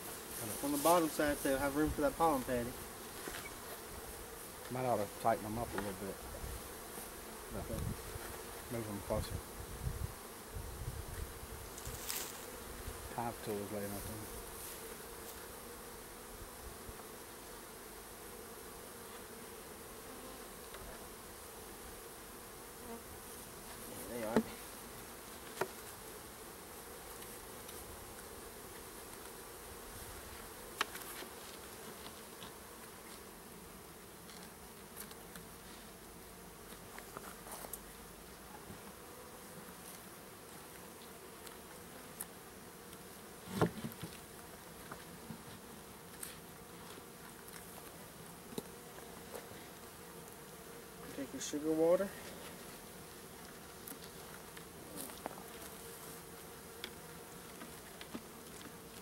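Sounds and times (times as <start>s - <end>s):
bees buzzing: 0.0s - 59.0s.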